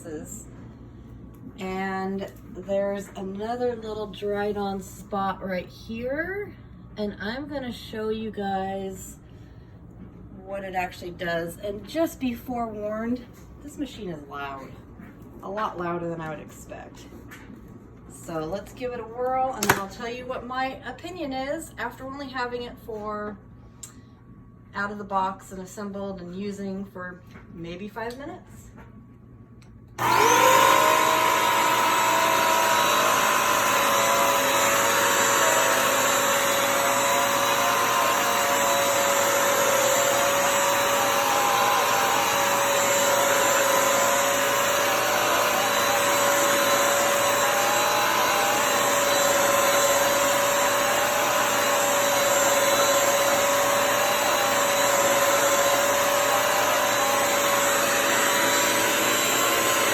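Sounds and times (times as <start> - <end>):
vacuum motor whining: 30.0 - 59.9.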